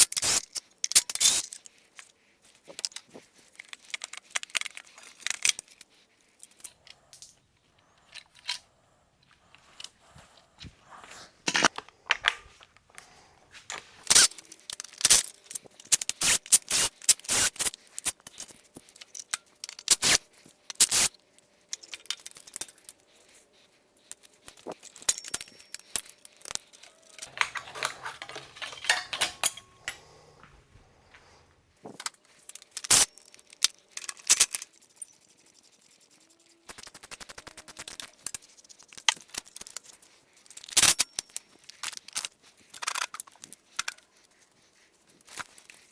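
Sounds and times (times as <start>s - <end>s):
metal tools clinking: 11.5s - 15.6s, 24.5s - 33.3s
metal parts rattling: 11.5s - 16.2s, 24.1s - 31.4s.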